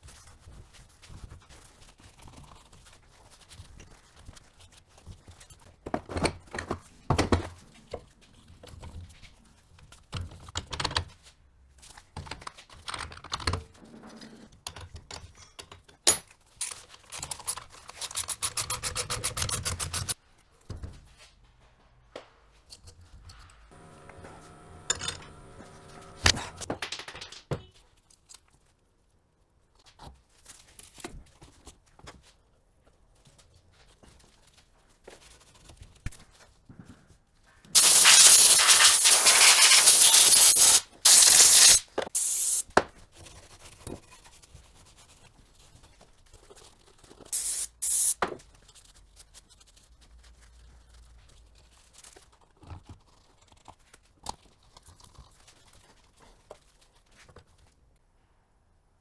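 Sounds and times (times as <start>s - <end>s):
metal tools clanking: 24.4s - 27.5s.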